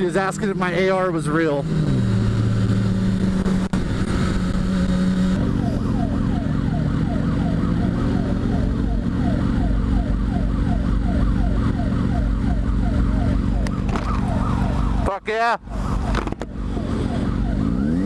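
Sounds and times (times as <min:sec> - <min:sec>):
motorcycle engine running: 0:01.6 - 0:15.0
emergency siren yelping: 0:05.4 - 0:18.0.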